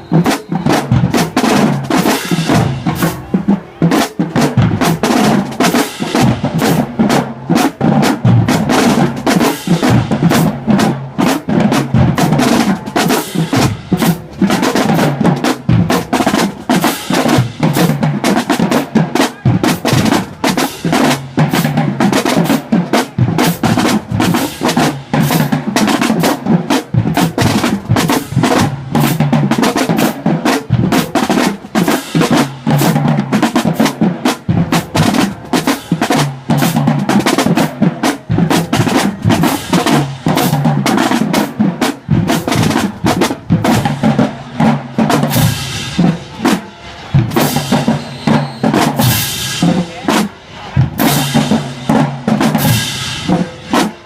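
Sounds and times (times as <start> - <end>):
bass drums: 0.0 - 53.9
snare drum rolls: 0.0 - 54.0
cymbal crashes: 45.3 - 51.4.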